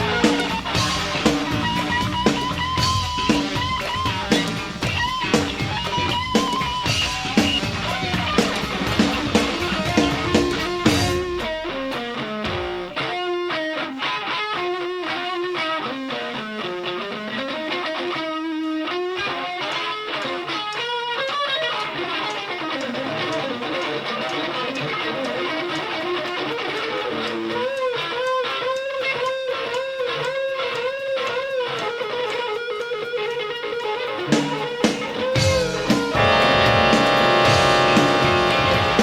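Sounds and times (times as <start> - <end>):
jazz-funk band playing: 0.0 - 12.9, 34.3 - 39.0
electric guitar solo: 0.0 - 39.0.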